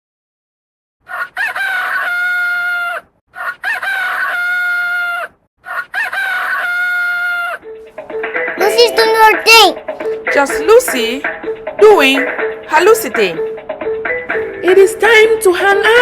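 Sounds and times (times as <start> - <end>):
rooster crowing: 1.0 - 7.6.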